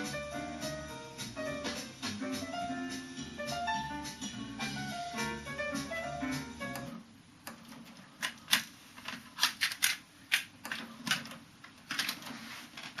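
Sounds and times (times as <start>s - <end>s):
music from cassette deck: 0.0s - 7.0s.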